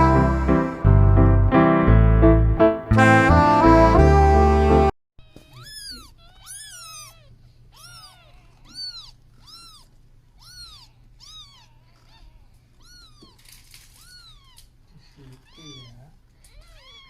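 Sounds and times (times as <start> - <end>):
kitten meowing: 5.2 - 14.7, 15.3 - 17.0.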